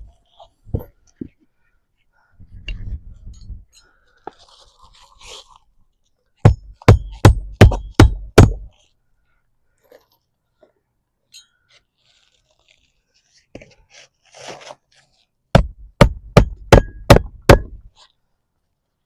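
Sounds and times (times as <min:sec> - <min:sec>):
hammer striking roofing nail: 0:06.4 - 0:08.7, 0:15.6 - 0:17.9.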